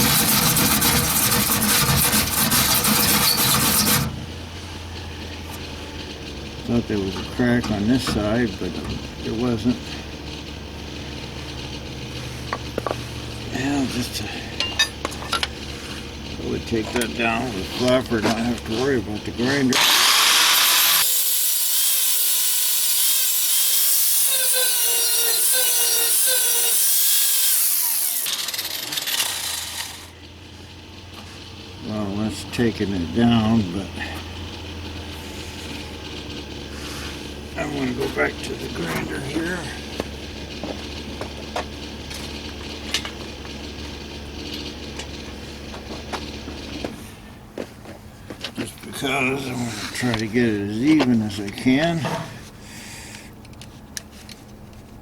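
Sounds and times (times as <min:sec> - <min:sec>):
angle grinder sanding metal: 0:00.0 - 0:04.2, 0:19.7 - 0:30.1
metal tools clinking: 0:14.6 - 0:15.6
grinder spinning down: 0:19.6 - 0:30.1.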